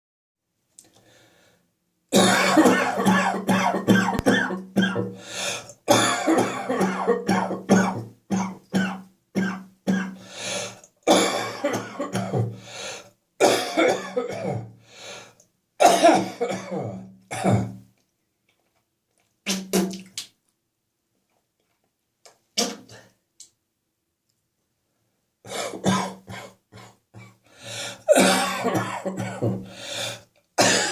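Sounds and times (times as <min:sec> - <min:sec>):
person coughing: 0:02.2 - 0:05.2, 0:05.9 - 0:10.2, 0:11.1 - 0:12.6, 0:13.4 - 0:14.7, 0:15.8 - 0:17.8, 0:25.5 - 0:27.4, 0:28.0 - 0:29.7, 0:30.6 - 0:30.9.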